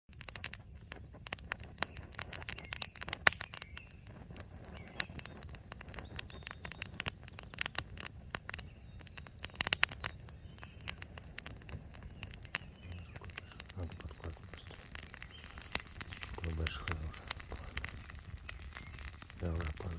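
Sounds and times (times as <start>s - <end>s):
campfire crackling and popping: 0.1s - 19.9s.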